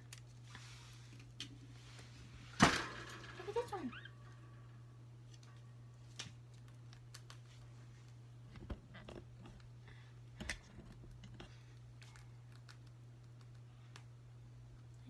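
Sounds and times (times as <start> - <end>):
steady low hum: 0.0 - 15.0
rabbit gnawing chew toy: 5.3 - 14.9.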